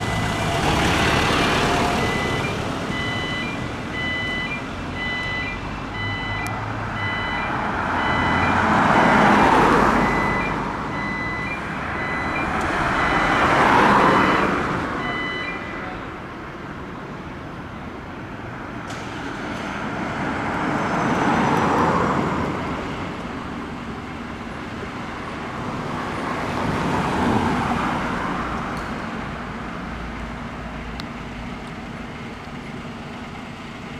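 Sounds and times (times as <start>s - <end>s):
road traffic passing: 0.0s - 33.9s
electronic warning beep: 1.9s - 8.7s, 9.9s - 16.0s.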